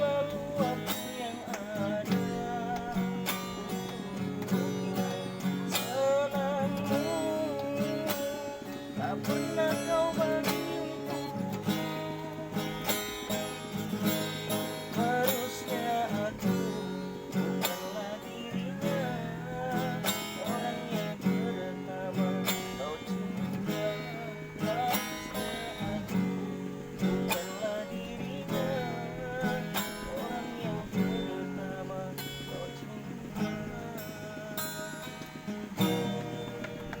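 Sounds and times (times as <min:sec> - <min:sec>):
strummed acoustic guitar: 0:00.0 - 0:37.0.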